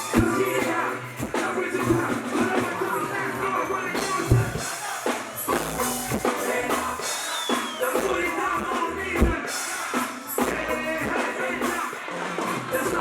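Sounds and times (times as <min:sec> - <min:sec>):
music with drum beat: 0:00.0 - 0:03.2, 0:03.9 - 0:13.0
bass drum thumps: 0:04.3 - 0:04.6.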